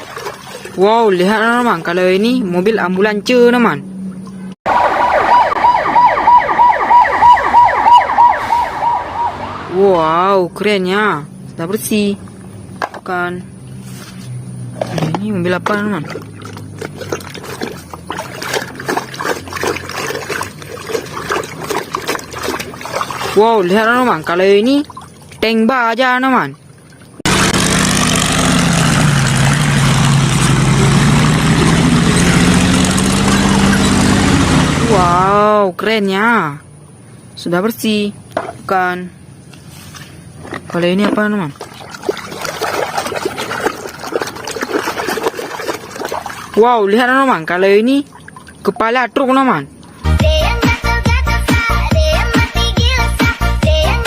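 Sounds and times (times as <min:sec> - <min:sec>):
tank engine rumbling: 0:00.6 - 0:25.4, 0:26.6 - 0:35.7
electronic ambulance siren wailing: 0:04.7 - 0:09.8.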